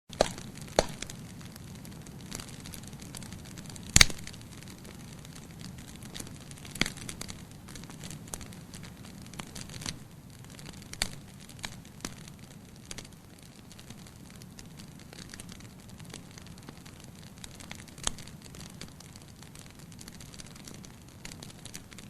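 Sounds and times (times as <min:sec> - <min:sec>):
campfire crackling: 0:00.1 - 0:22.0
fire pops and snaps: 0:00.1 - 0:22.0
flame rushing: 0:03.7 - 0:04.4.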